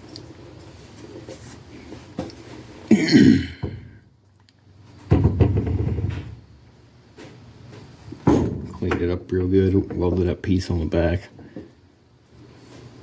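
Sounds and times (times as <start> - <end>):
person coughing: 2.9 - 3.9
person clearing throat: 2.9 - 4.0.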